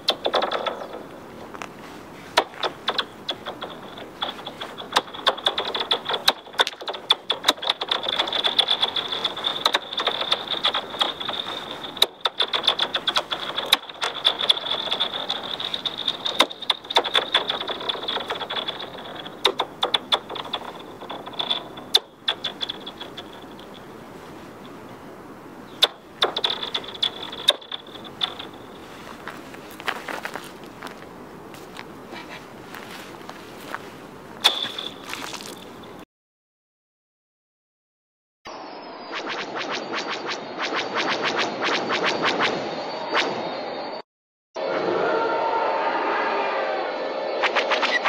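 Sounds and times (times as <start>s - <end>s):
rocks clicking on thin ice: 2.4s - 23.7s, 34.4s - 35.8s
high ringing whine: 34.4s - 36.0s, 41.6s - 44.0s.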